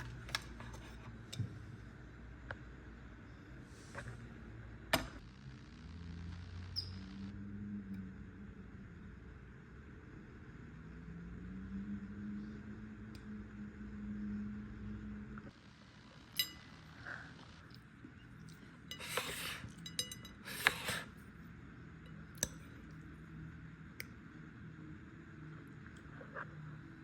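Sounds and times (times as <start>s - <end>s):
steady low hum: 0.0s - 27.0s
dishes clinking: 16.4s - 16.7s, 18.9s - 21.0s.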